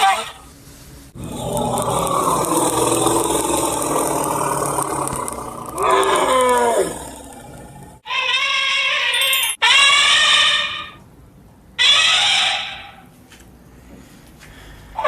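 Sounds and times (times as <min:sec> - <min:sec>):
elephant-like mammoth calls: 0:01.2 - 0:11.0.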